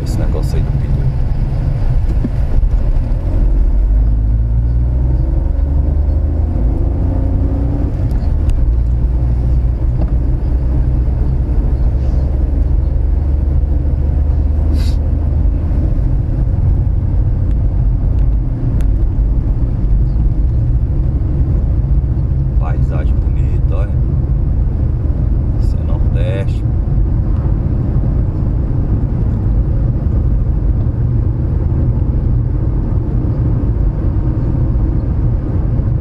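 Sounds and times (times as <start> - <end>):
vehicle engine and tyres rumbling: 0.0 - 36.0.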